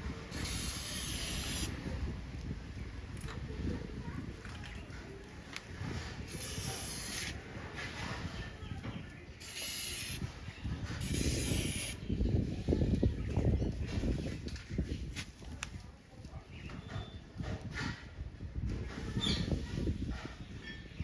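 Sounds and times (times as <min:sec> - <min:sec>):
aerosol can spraying: 0:00.3 - 0:01.8, 0:06.3 - 0:07.4, 0:09.4 - 0:10.2, 0:11.0 - 0:12.0.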